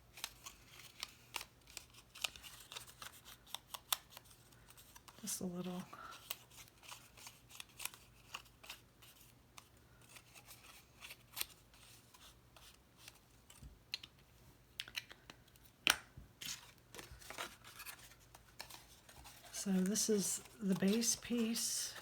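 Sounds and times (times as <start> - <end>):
paper scratches and rustles: 16.4 - 22.0.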